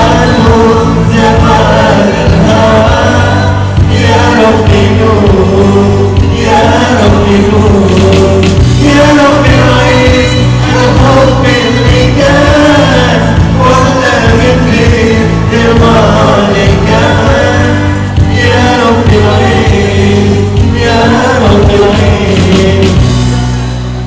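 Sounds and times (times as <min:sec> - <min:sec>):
loud music with singing: 0:00.0 - 0:24.0.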